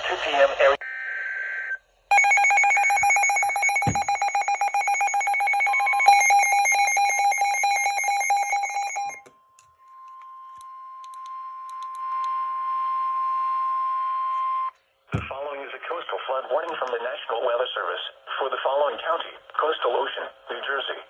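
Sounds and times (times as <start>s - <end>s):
fast pulsing electronic alarm trill: 2.1s - 9.2s.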